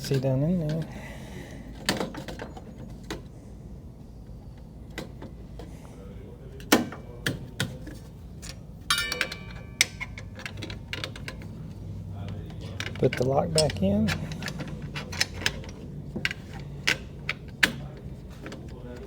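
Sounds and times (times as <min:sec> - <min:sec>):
ringing metal clinks: 0:08.9 - 0:10.3.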